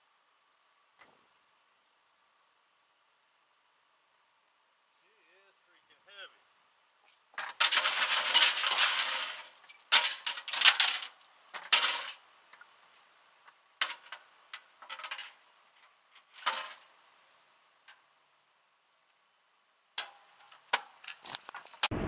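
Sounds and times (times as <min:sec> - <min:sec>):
metal jangling and clinking: 0:07.1 - 0:12.2.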